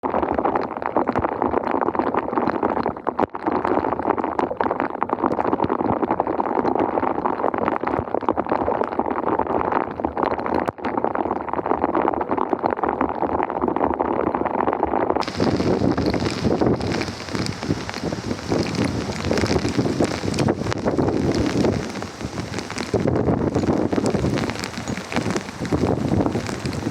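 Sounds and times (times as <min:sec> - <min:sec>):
floodwater gurgling: 0:15.2 - 0:26.9.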